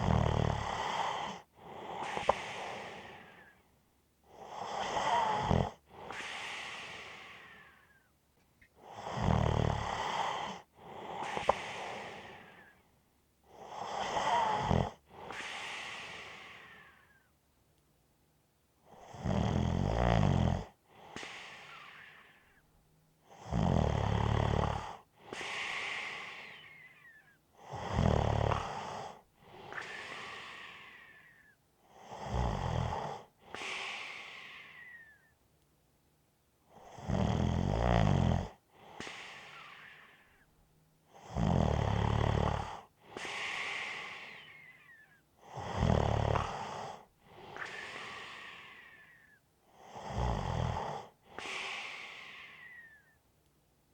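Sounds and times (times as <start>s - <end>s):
person snoring: 0.0s - 1.4s, 9.0s - 10.6s, 13.9s - 17.0s, 27.7s - 31.3s, 32.1s - 35.1s, 37.0s - 40.2s, 41.2s - 49.2s, 49.9s - 53.1s
breathy whistling breath: 21.1s - 22.7s, 25.4s - 27.4s, 29.6s - 31.6s, 33.6s - 35.4s, 38.9s - 40.6s, 43.1s - 45.2s, 47.4s - 49.4s, 51.4s - 53.2s.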